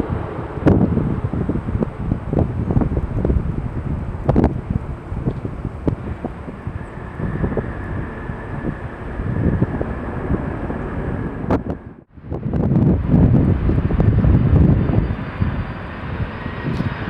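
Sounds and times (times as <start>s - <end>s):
faint high whine: 0.0s - 17.0s
jet airliner running: 0.0s - 17.0s
wind buffeting microphone: 0.0s - 17.0s.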